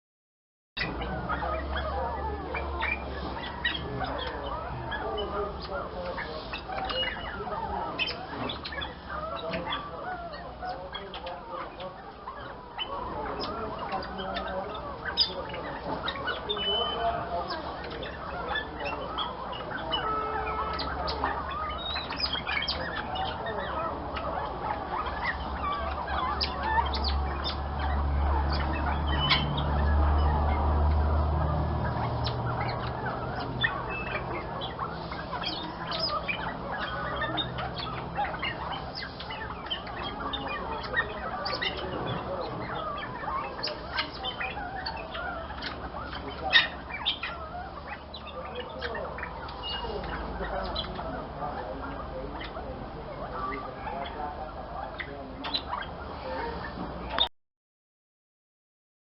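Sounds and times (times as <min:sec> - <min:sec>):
birds squawking and chirping: 0:00.8 - 0:57.3
sharp bird call: 0:16.1 - 0:17.7, 0:18.4 - 0:23.9.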